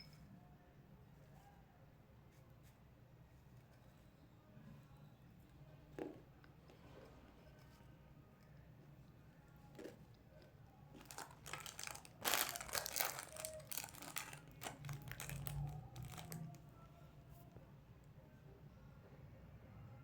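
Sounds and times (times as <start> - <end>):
plastic wrapper crinkling: 11.0 - 16.6.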